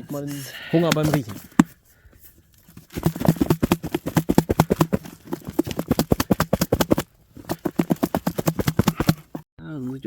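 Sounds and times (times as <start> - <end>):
chicken wings shaken wet slapping: 3.0 - 9.4.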